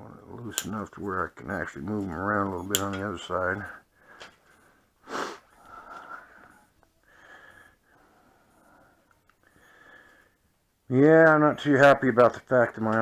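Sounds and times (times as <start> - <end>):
person breathing: 3.8 - 10.6.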